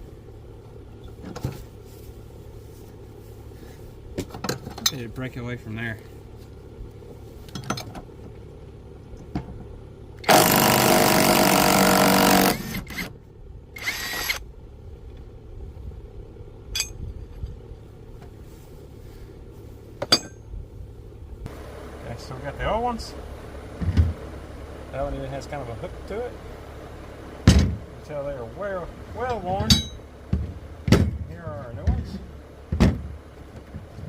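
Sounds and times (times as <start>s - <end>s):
impact wrench bursts: 10.2s - 13.1s, 13.8s - 14.4s.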